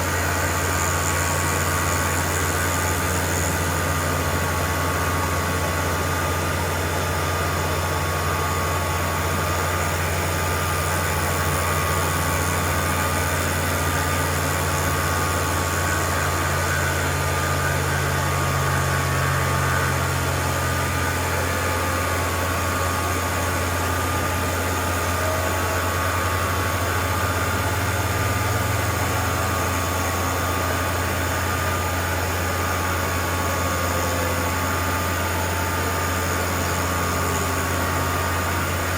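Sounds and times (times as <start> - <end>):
cnc machine hum: 0.0 - 38.9.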